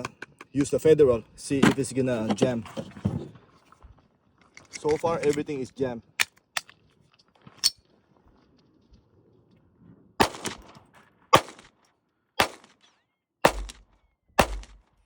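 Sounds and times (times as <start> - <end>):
pistol shots: 10.2 - 11.7, 12.4 - 12.8, 13.4 - 14.9.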